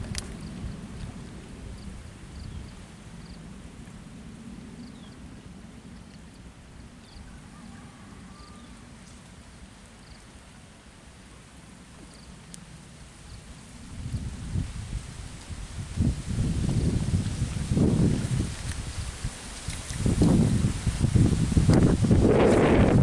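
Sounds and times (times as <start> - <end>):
wind buffeting microphone: 0.0 - 5.9, 13.5 - 23.0.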